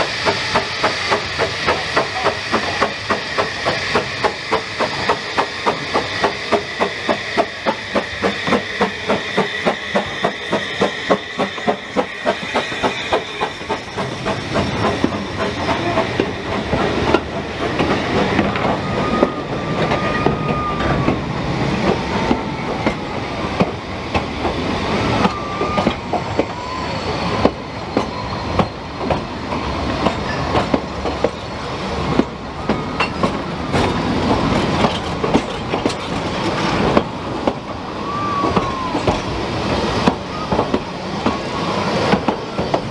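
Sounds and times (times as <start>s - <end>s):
wheel squeal: 0.0s - 17.2s, 24.6s - 29.1s
train wheels clattering: 0.0s - 42.9s.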